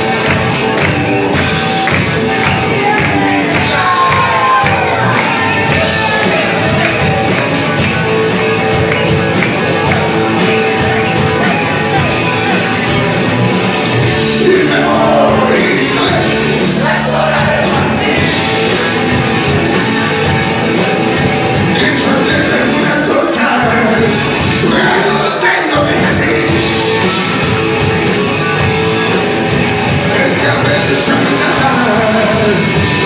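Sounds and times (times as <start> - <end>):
rock music with singing: 0.0 - 33.0.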